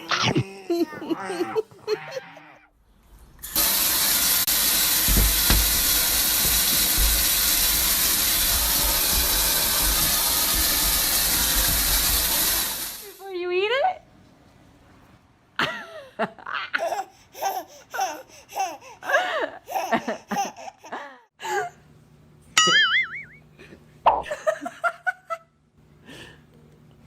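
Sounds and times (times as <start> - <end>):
baby giggling: 0.0 - 2.4, 19.7 - 20.9.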